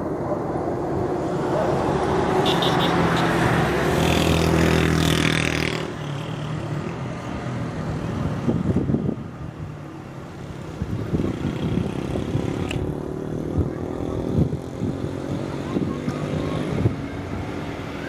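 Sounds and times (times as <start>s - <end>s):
engine hum with high whine: 0.0s - 18.0s
wind buffeting microphone: 7.7s - 18.0s.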